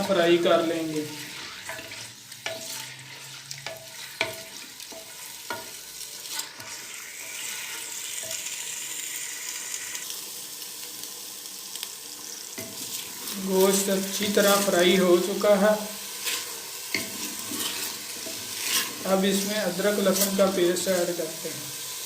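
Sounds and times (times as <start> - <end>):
meat sizzling in oil: 0.0 - 22.0
utensil scraping a pot: 1.0 - 8.5, 16.2 - 20.5.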